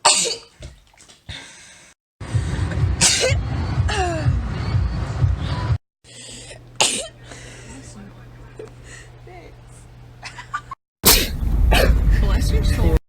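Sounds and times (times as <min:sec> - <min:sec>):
steady low rumble: 0:02.2 - 0:05.8, 0:11.1 - 0:13.0
person sneezing: 0:11.0 - 0:12.0.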